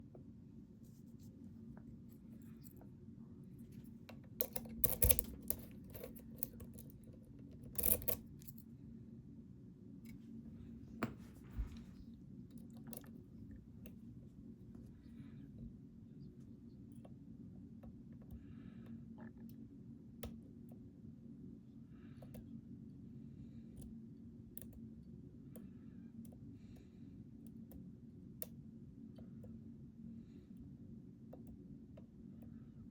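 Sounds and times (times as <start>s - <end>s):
steady low hum: 0.0s - 32.9s
lock picking clicks and scrapes: 4.3s - 8.6s.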